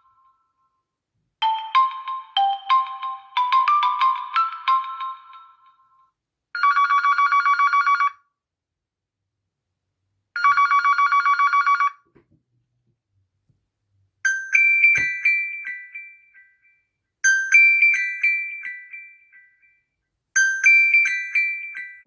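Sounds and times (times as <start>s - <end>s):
marimba-like ringtone melody: 1.4s - 5.7s, 14.3s - 16.4s
chiming ringtone melody: 1.4s - 6.0s, 14.3s - 22.0s.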